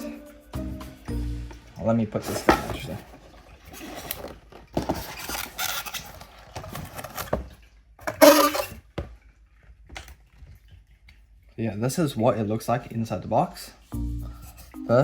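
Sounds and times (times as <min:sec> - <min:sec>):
cardboard packaging rustling: 0:02.2 - 0:08.9.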